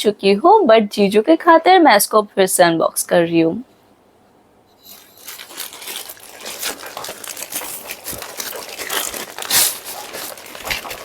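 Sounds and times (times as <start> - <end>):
packaging crinkling and rustling: 4.8 - 11.0.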